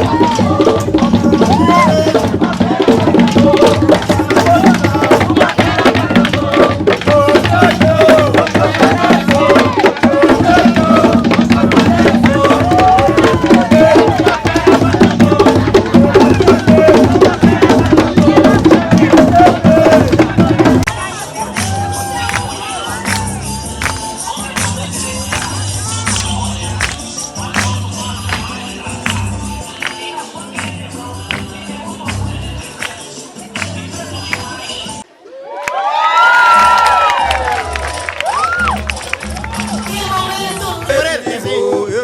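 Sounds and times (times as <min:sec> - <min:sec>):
hand drums beating: 0:00.0 - 0:30.0
voices singing: 0:00.0 - 0:35.2, 0:39.7 - 0:42.0
crowd noise: 0:00.0 - 0:42.0.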